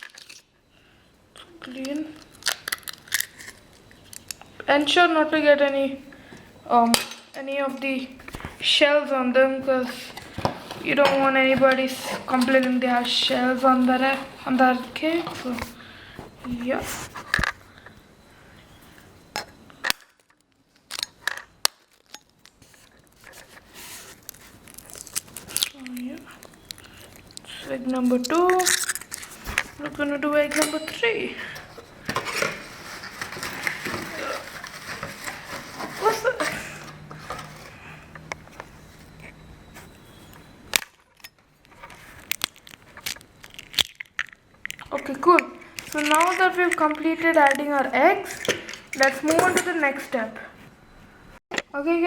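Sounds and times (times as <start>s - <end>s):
low steady hum: 0.0s - 52.0s
handling and scraping: 9.5s - 18.0s, 22.0s - 44.4s.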